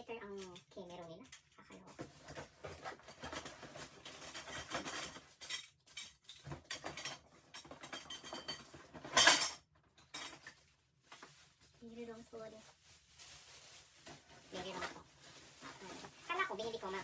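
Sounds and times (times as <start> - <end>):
metal parts clinking and rattling: 0.3 - 10.6.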